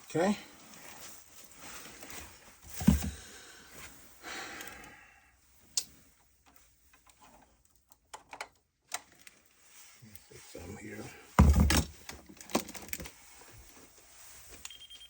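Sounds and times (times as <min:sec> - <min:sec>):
soft rustle: 0:00.4 - 0:04.2, 0:09.1 - 0:11.4, 0:12.8 - 0:15.0.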